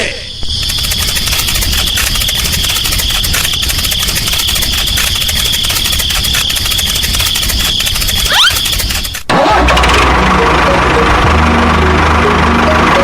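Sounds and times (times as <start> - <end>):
fast even rattle: 0.5 - 10.2
small electric motor whining: 0.6 - 9.3.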